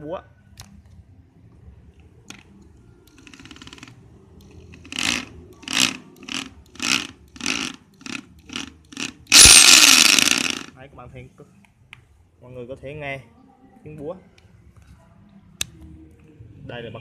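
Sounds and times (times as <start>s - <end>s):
hammer drill clattering: 4.8s - 10.7s.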